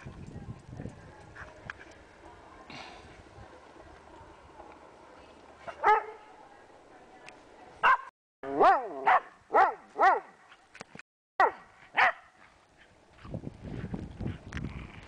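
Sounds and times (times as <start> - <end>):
dog barking: 5.7 - 6.2, 7.8 - 10.4, 11.4 - 12.4.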